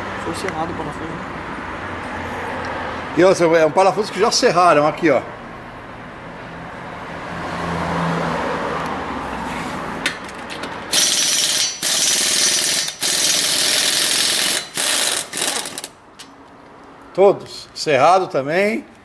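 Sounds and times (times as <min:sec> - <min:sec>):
pneumatic impact wrench hammering: 0:10.0 - 0:16.4.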